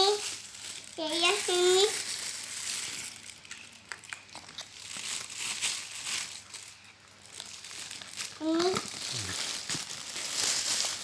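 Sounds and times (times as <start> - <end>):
crinkling and rustling handling: 0.0 - 11.0.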